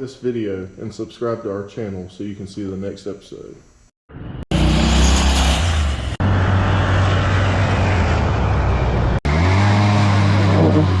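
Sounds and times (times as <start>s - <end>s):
motor engine running loudly: 4.5s - 11.0s.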